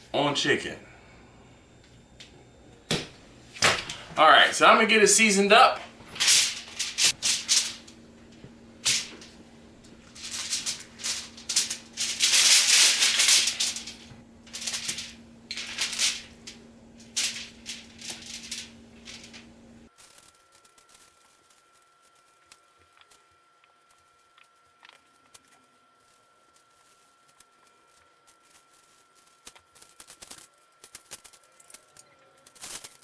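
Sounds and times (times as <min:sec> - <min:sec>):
steady low hum: 0:00.0 - 0:33.0
seasoning shaker rattling: 0:06.2 - 0:08.0, 0:10.0 - 0:16.4, 0:17.0 - 0:22.3, 0:26.7 - 0:33.0.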